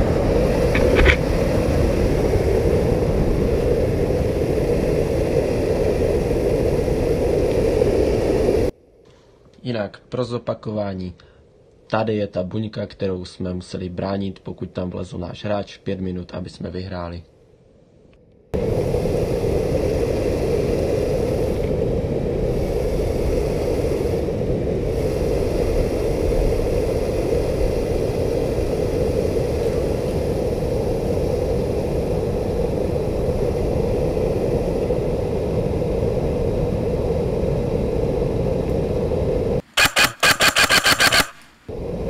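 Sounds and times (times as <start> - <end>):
low rushing noise: 0.0 - 12.7, 15.4 - 42.0
airsoft rifle firing full-auto: 39.7 - 41.5.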